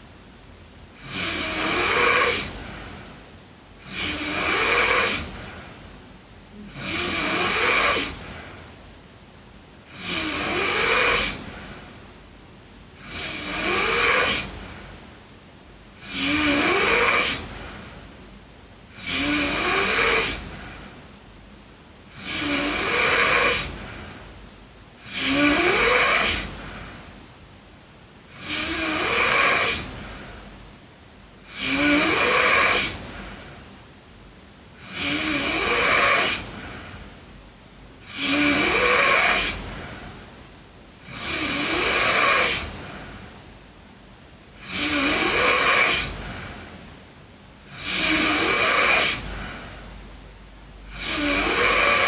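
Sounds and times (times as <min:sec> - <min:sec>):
quiet breathing: 0:00.0 - 0:52.0
girl snoring: 0:01.0 - 0:03.2, 0:03.8 - 0:05.8, 0:06.5 - 0:08.7, 0:09.8 - 0:12.0, 0:13.0 - 0:15.0, 0:16.0 - 0:18.2, 0:18.9 - 0:21.1, 0:22.1 - 0:24.4, 0:25.0 - 0:27.2, 0:28.3 - 0:30.5, 0:31.4 - 0:33.6, 0:34.8 - 0:37.1, 0:38.0 - 0:40.2, 0:41.0 - 0:43.3, 0:44.6 - 0:46.7, 0:47.7 - 0:49.9, 0:50.9 - 0:52.0.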